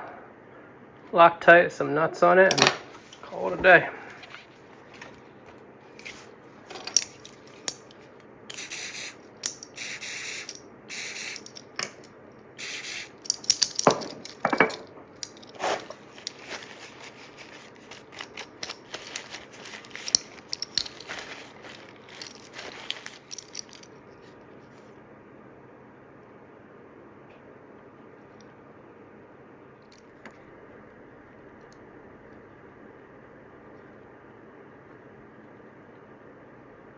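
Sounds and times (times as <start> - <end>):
small metal parts clicking: 6.0 - 24.0
short hissing bursts: 8.5 - 11.6, 12.6 - 13.6.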